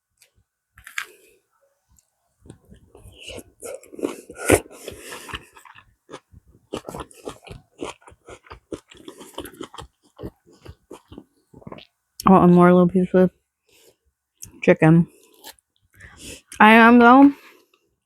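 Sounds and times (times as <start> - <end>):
chewing food crunches: 2.5 - 11.9.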